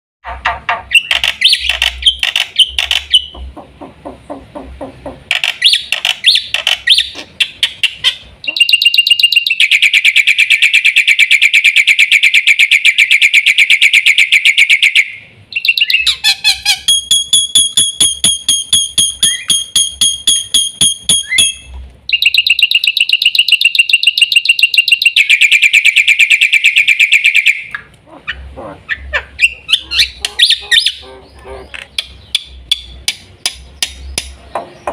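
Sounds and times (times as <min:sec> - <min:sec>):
myna harsh chattering calls: 0:27.6 - 0:32.6.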